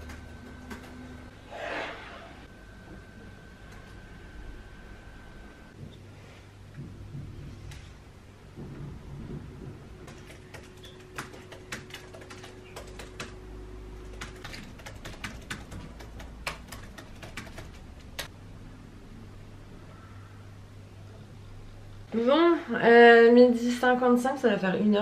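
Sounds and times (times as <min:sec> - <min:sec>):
keyboard typing: 0:00.0 - 0:01.2, 0:10.0 - 0:13.4, 0:14.0 - 0:18.3.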